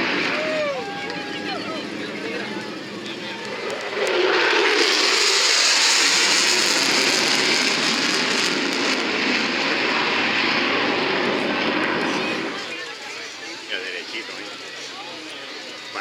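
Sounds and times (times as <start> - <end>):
fighter jet passing low: 0.0 - 12.6.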